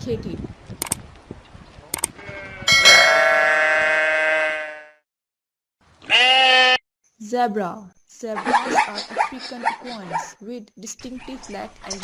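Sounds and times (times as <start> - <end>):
sheep bleating: 2.2 - 5.0, 6.0 - 6.8.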